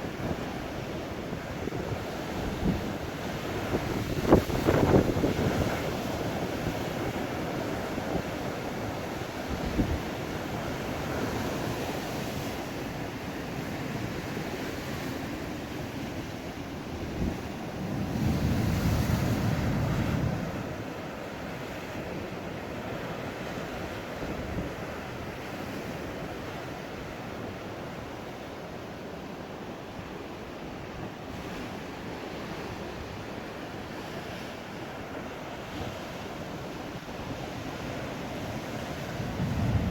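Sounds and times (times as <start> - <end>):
surf breaking and washing: 0.0 - 27.6, 30.7 - 39.9
wind buffeting microphone: 1.4 - 8.3, 37.2 - 39.9.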